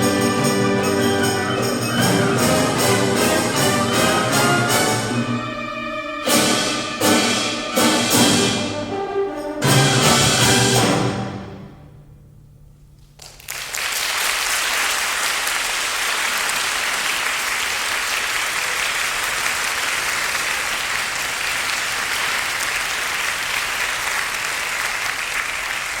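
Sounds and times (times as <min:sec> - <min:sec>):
audience applauding: 0:13.2 - 0:26.0.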